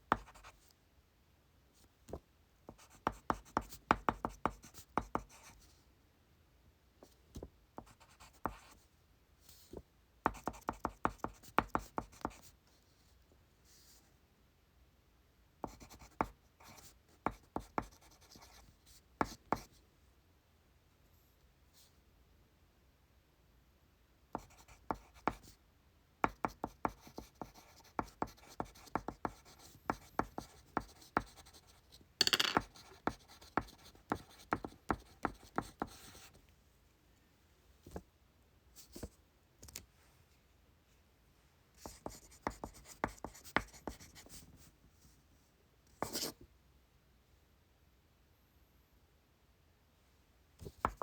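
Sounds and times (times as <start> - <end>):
pencil writing on paper: 0.1 - 0.6, 2.7 - 5.6, 7.8 - 8.8, 10.3 - 12.5, 15.6 - 18.6, 24.3 - 25.5, 26.3 - 36.4, 41.8 - 44.4, 46.0 - 46.4.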